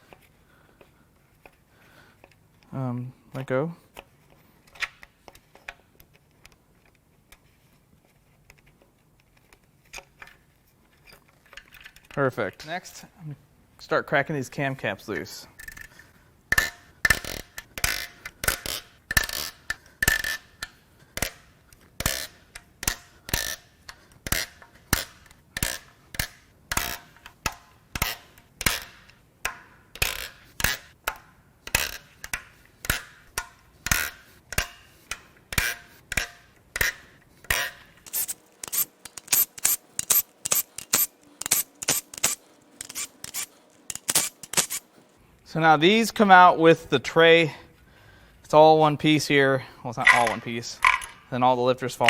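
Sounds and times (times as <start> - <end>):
hand ratchet clicking: 22.0 - 30.8, 37.5 - 44.9.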